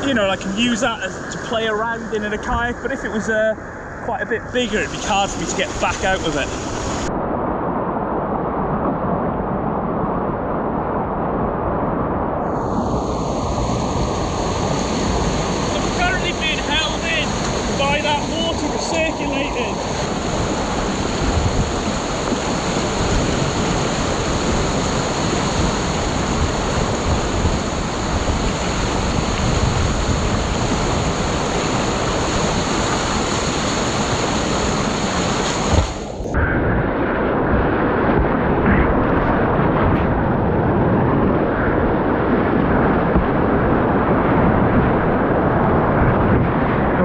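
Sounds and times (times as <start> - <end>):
white water rushing: 0.0 - 7.1, 12.4 - 36.6.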